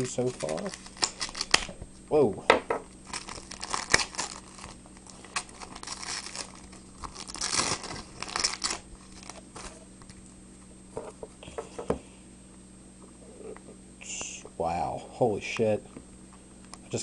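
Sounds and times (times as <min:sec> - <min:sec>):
packaging crinkling and tearing: 0:00.0 - 0:01.7, 0:03.0 - 0:10.3.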